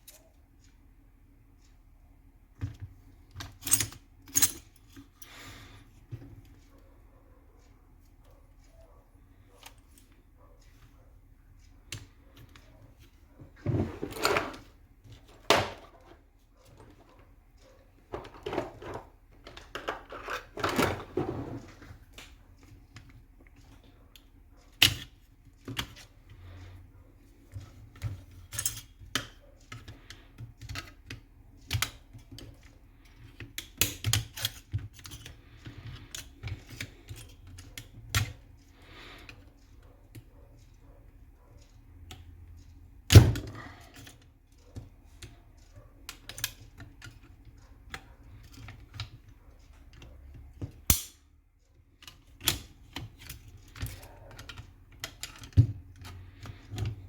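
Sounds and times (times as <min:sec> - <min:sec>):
rifle parts clicking and knocking: 0:02.6 - 0:05.2, 0:11.9 - 0:26.1, 0:52.0 - 0:57.0
rubbing and scraping: 0:13.4 - 0:14.8, 0:18.1 - 0:22.0.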